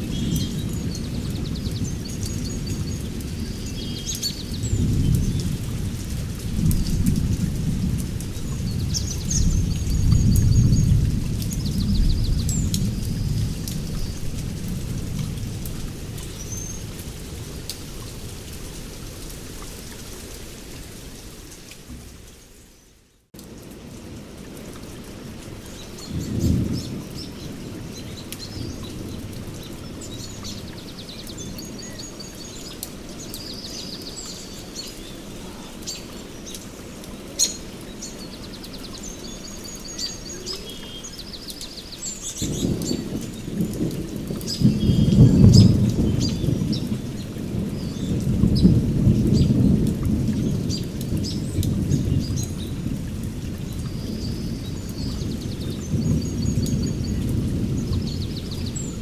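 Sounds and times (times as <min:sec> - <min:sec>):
rain falling: 0:00.0 - 0:59.0
thunder rumble: 0:04.3 - 0:19.1, 0:25.8 - 0:31.8, 0:42.3 - 0:59.0.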